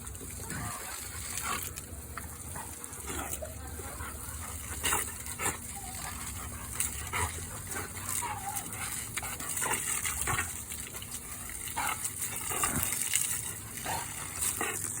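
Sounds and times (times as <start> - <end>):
garden hose spray hissing: 0.0 - 15.0
dog snapping at water: 4.5 - 15.0.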